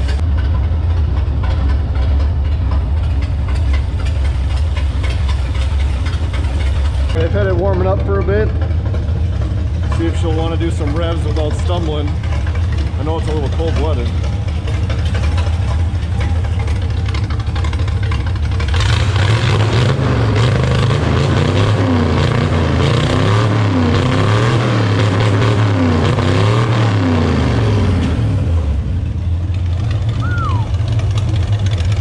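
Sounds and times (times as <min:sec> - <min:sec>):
race car engine revving: 0:00.0 - 0:32.0.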